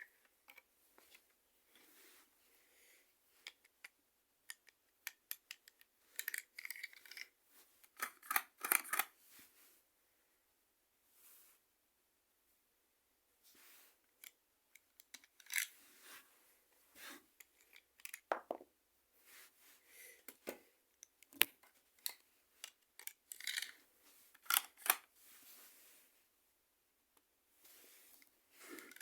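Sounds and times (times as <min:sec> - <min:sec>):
plastic toy gun clicks and rattles: 0:03.4 - 0:09.1, 0:14.2 - 0:15.7, 0:17.5 - 0:18.3, 0:22.0 - 0:23.8, 0:24.4 - 0:25.1, 0:28.8 - 0:29.0.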